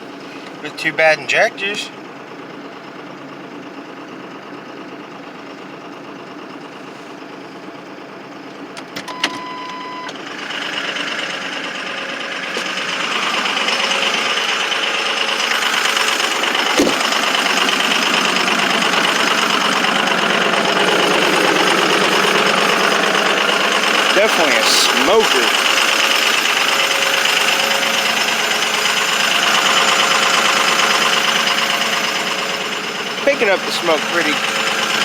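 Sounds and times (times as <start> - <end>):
diesel engine idling and misfiring: 0.0 - 35.0
short steady beep: 9.1 - 10.1.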